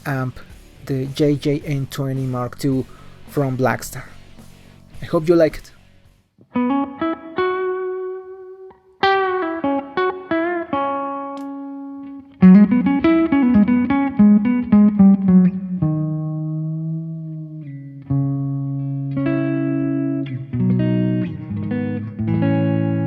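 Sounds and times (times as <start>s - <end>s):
electric guitar playing: 0.0s - 23.0s.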